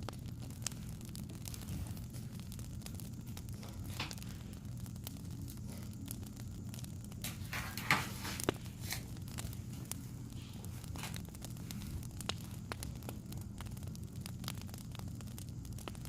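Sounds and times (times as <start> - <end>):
low hum: 0.0 - 16.0
rustling hiss: 0.0 - 16.0
wood fire crackling: 0.0 - 16.0.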